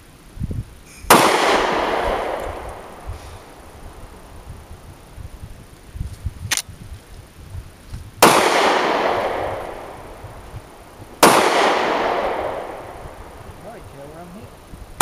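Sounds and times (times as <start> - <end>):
sharp crack: 1.0 - 3.0, 8.2 - 10.2, 11.2 - 14.2
gunshot: 1.1 - 2.7, 8.2 - 9.8, 11.2 - 13.0.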